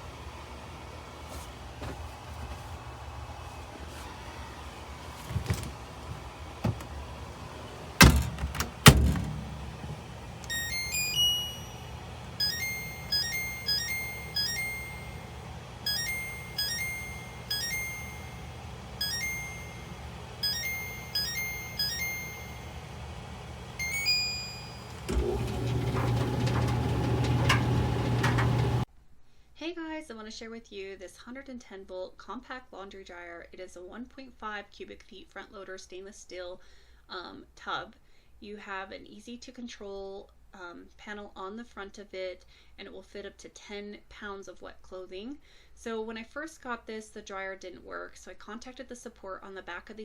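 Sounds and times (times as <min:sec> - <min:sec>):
dryer drum motor humming: 0:00.0 - 0:28.9
heavy thunks: 0:05.0 - 0:10.6.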